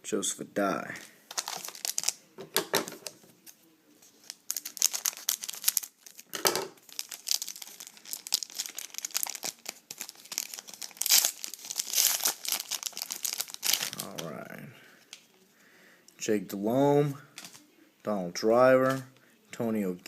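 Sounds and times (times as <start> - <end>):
cards being handled: 0.9 - 14.3, 17.4 - 17.6
wrapper crinkling and tearing: 1.3 - 2.2, 4.0 - 14.4.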